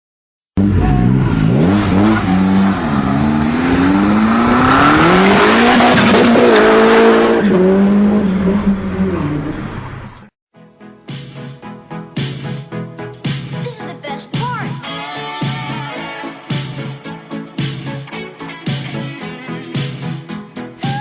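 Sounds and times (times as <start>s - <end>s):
car engine revving: 0.6s - 10.3s.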